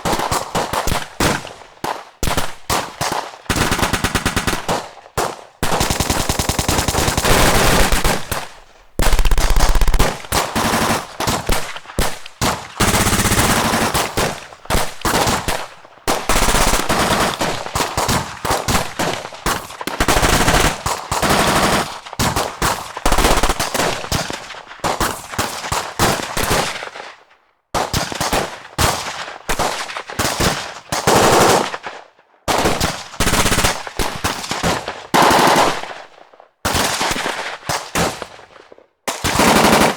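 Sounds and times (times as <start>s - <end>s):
automatic gunfire bursts: 2.3s - 23.9s, 39.1s - 39.9s.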